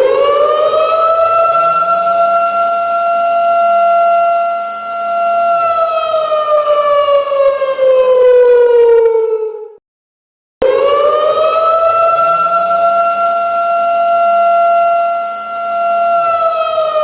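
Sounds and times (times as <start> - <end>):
siren wailing: 0.0 - 9.8, 10.6 - 17.0.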